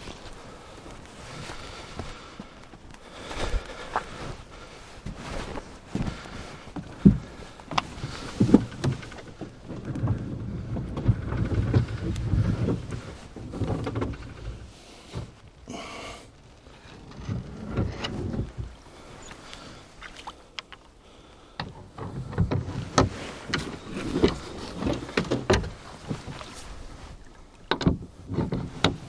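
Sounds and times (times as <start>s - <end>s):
rowboat knocks and bumps: 5.1s - 15.4s, 21.6s - 29.0s.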